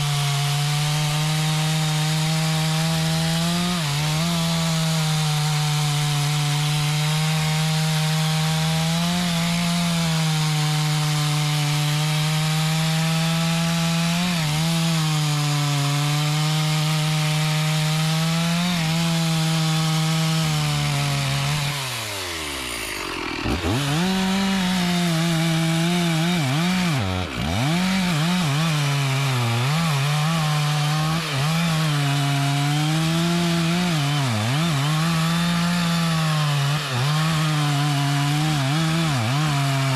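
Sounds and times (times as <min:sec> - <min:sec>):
chainsaw cutting wood: 0:00.0 - 0:39.9.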